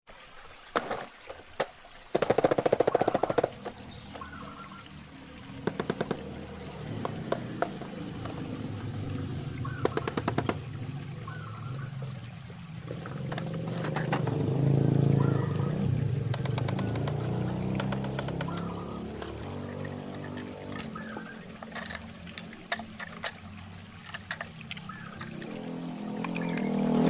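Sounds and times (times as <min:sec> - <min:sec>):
running water: 0:00.0 - 0:27.0
toy truck clicking and rattling: 0:19.2 - 0:25.6.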